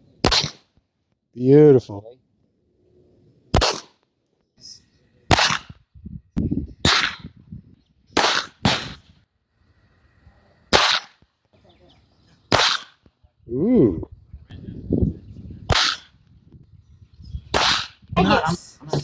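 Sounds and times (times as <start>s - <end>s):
pistol shots: 0.2s - 0.7s, 3.5s - 4.0s, 5.3s - 5.8s, 6.8s - 7.3s, 8.2s - 9.1s, 10.7s - 11.2s, 12.5s - 13.0s, 15.7s - 16.1s, 17.5s - 18.0s.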